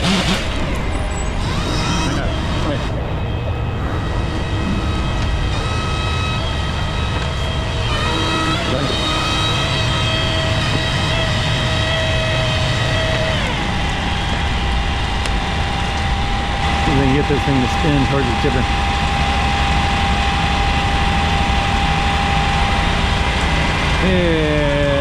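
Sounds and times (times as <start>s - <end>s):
crane diesel engine running: 0.0s - 25.0s
hydraulic whine: 0.0s - 25.0s.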